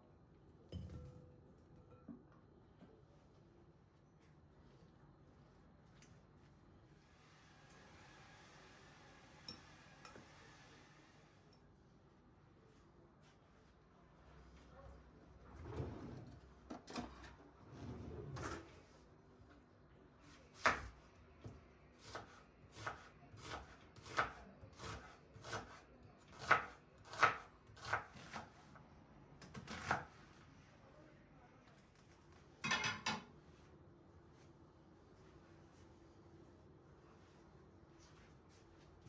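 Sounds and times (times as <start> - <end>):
knife chopping on wooden board: 20.6 - 21.0, 22.0 - 28.5.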